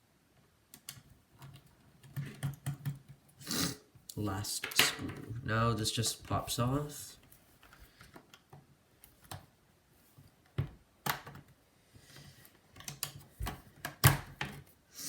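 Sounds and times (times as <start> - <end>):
small plastic clicks and knocks: 0.7 - 3.2.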